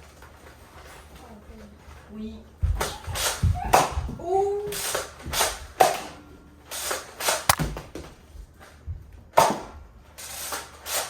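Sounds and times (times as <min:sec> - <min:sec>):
foam dart blasters firing: 0:07.2 - 0:07.9
sharp click: 0:07.5 - 0:07.7.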